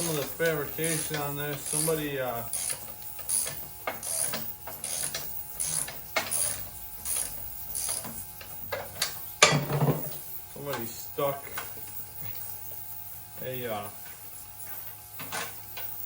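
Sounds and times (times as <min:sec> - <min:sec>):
ratchet wrench clicking: 0:00.0 - 0:09.2.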